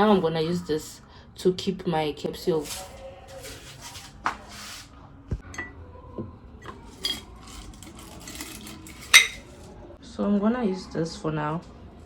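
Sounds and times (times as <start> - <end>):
capsules clinking against container: 6.9 - 9.6.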